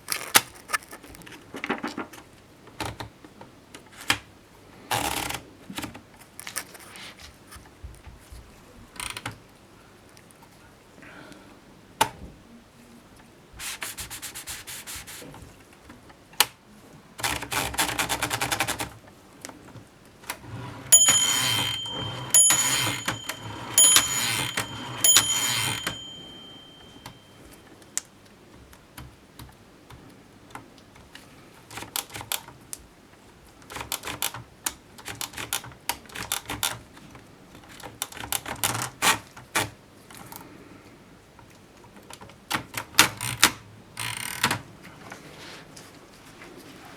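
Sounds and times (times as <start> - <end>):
high metallic ringing: 20.9 - 27.6.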